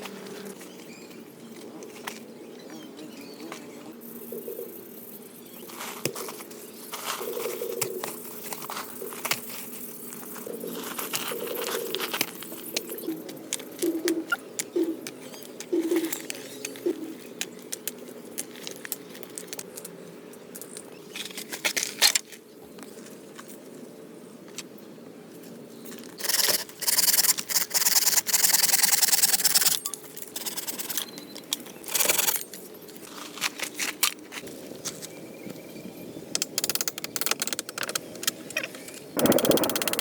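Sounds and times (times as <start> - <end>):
knocks and clicks: 39.2 - 40.0.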